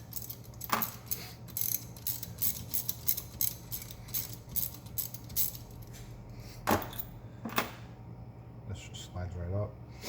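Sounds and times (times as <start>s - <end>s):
hand ratchet clicking: 0.0s - 5.7s.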